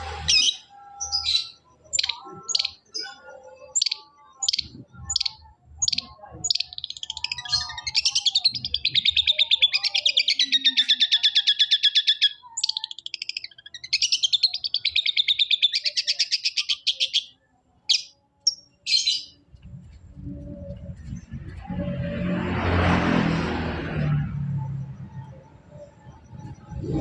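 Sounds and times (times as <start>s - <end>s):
bird singing fast trills: 0.3s - 19.5s.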